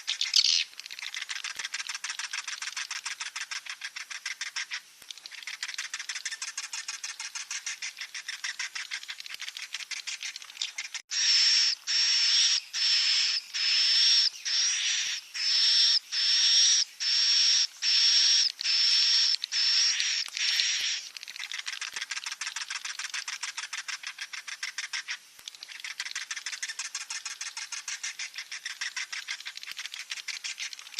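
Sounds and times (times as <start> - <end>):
chicks chirping: 9.9 - 21.1.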